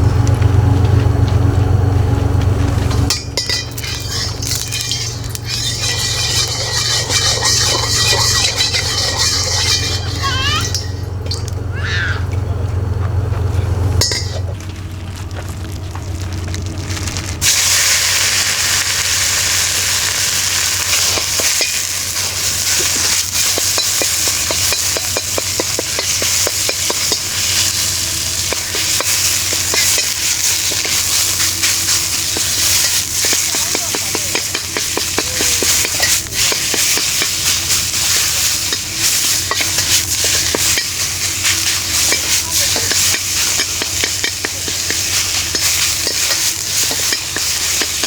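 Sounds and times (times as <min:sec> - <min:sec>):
utensil stirring against pan: 0:03.4 - 0:11.2, 0:19.3 - 0:48.0
food sizzling in a hot pan: 0:16.9 - 0:48.0.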